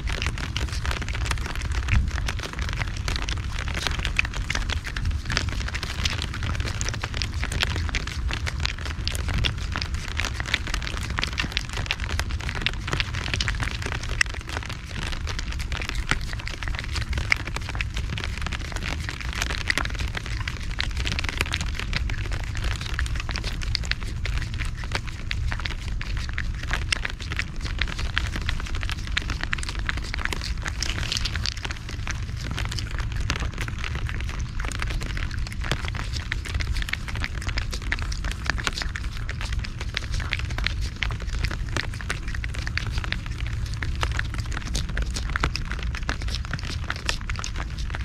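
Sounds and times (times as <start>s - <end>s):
steady low rumble: 0.0s - 48.0s.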